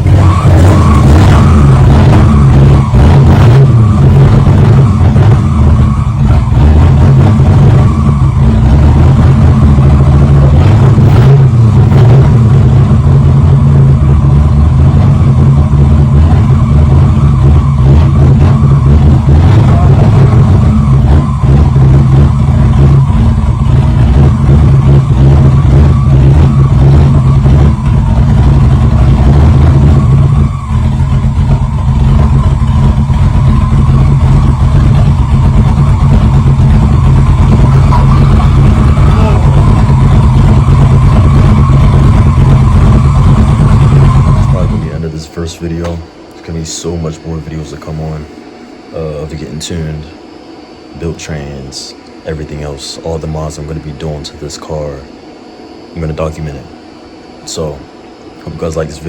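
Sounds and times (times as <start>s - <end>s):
car engine rumbling unevenly: 0.0s - 59.0s.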